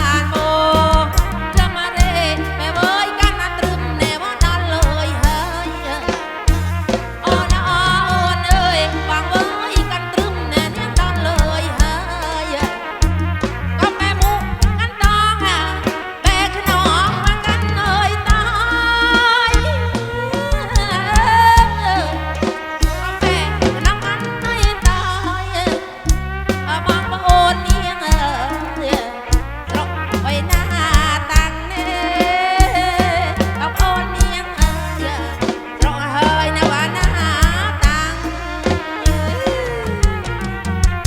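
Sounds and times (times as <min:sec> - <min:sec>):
amplified live band music: 0:00.0 - 0:41.0.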